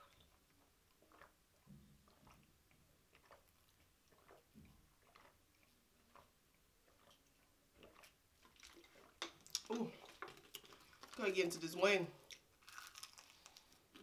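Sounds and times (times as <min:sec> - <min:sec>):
soft mouth sounds of eating: 0:00.0 - 0:02.5, 0:03.1 - 0:11.2
small clicks of eating: 0:00.0 - 0:11.3, 0:12.2 - 0:14.0.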